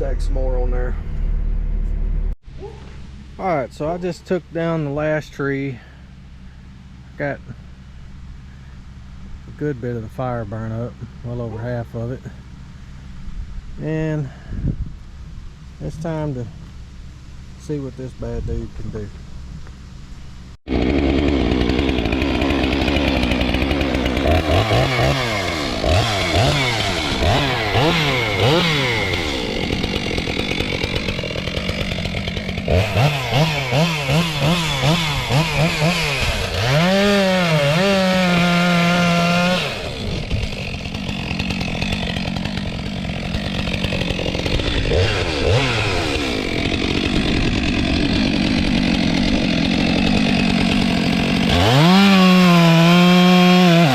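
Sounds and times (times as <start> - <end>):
chainsaw revving: 20.7 - 53.9.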